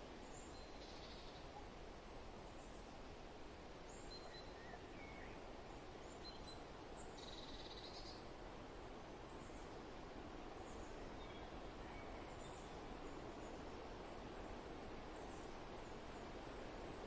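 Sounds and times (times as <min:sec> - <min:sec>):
soft wind: 0:00.0 - 0:17.0
faint bird chirps: 0:00.3 - 0:01.7, 0:03.9 - 0:05.4, 0:06.0 - 0:08.2.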